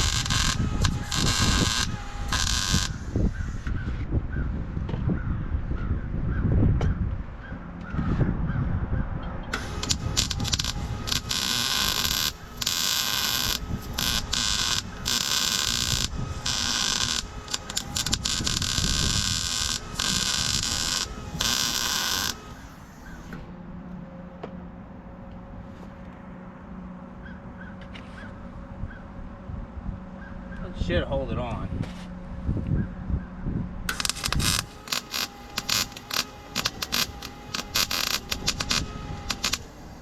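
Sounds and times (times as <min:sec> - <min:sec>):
welding arc crackling and hissing: 0:00.0 - 0:03.7, 0:09.6 - 0:23.3, 0:33.9 - 0:40.0.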